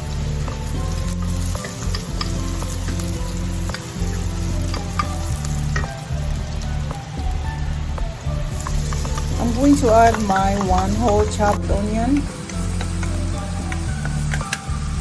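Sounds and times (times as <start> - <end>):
vegetables sizzling in hot oil: 0.0 - 15.0
spoon clicking against pan: 10.1 - 14.7.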